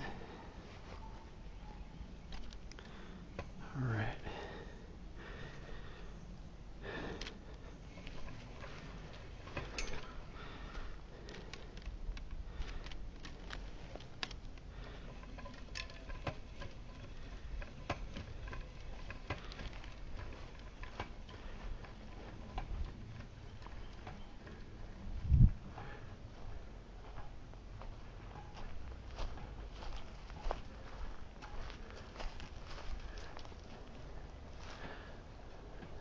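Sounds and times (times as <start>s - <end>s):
cable and gear being handled: 0.0s - 3.6s, 7.0s - 25.8s.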